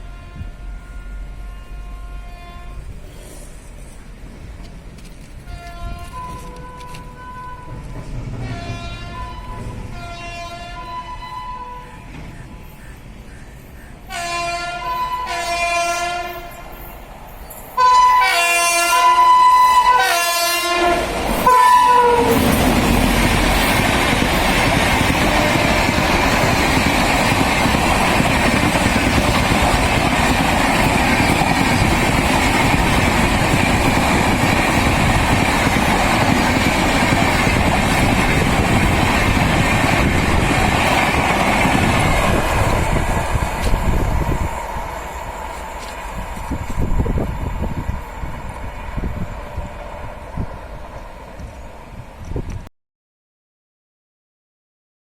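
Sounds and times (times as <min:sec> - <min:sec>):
locomotive twin-tone horn blasts: 0:00.0 - 0:03.0, 0:05.5 - 0:12.2, 0:14.1 - 0:16.7, 0:17.8 - 0:23.2
train coaches running on track: 0:00.0 - 0:52.7.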